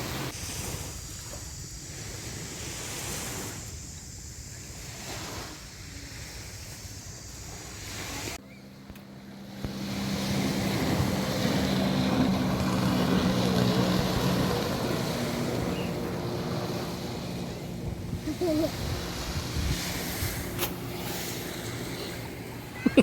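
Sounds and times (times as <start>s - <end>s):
surf washing: 0.0s - 23.0s
motor engine droning: 8.0s - 23.0s
wind on microphone: 9.6s - 23.0s.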